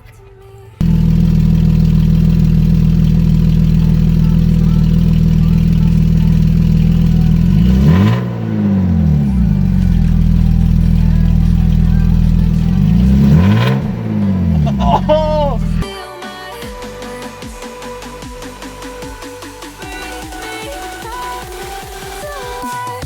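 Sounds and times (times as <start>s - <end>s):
car engine idling and revving: 0.8s - 15.8s.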